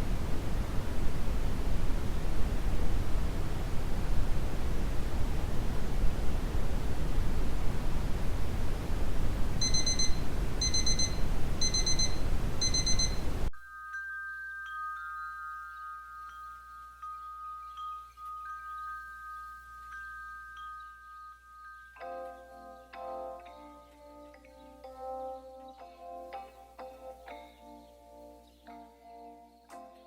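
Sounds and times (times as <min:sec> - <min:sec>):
brown noise hissing: 0:00.0 - 0:13.5
faint steady high tone: 0:00.0 - 0:30.0
timer alarm beeping: 0:09.6 - 0:13.6.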